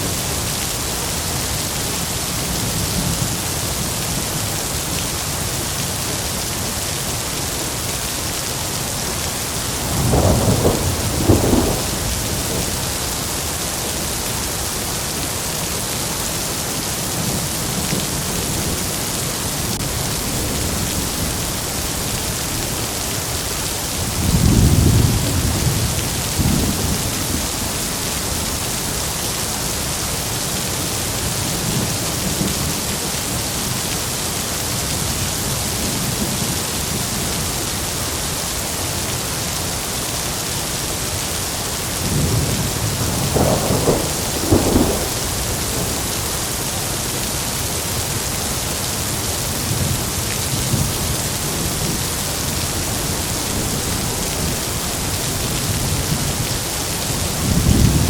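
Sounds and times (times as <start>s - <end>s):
heavy rain falling: 0.0s - 58.0s
thunder rumbling: 9.6s - 14.2s, 42.0s - 47.1s, 52.8s - 58.0s.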